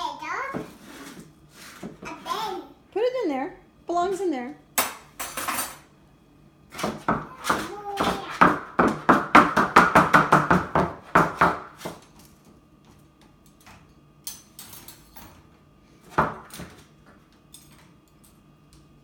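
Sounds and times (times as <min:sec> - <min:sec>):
dishes and cutlery clattering: 0:04.8 - 0:05.9.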